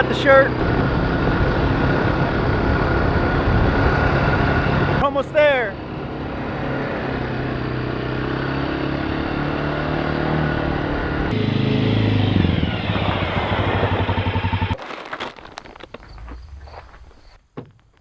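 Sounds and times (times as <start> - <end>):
small engine running and shutting off: 6.1 - 14.8.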